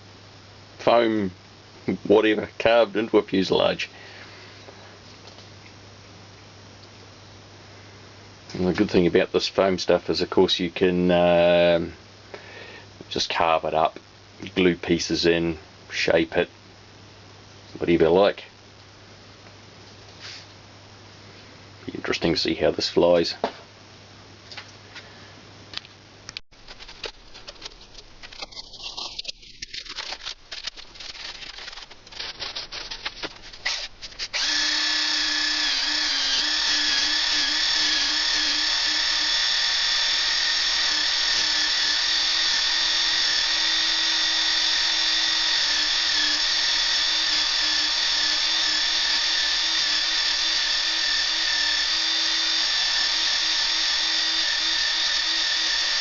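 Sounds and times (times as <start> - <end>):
power tool motor whine: 31.0 - 56.0.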